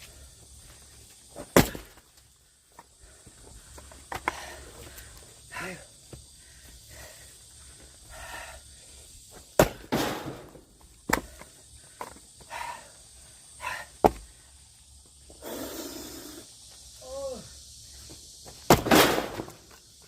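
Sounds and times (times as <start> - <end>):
axe striking firewood: 1.4 - 2.0, 9.6 - 11.3, 14.0 - 14.2, 18.6 - 19.7.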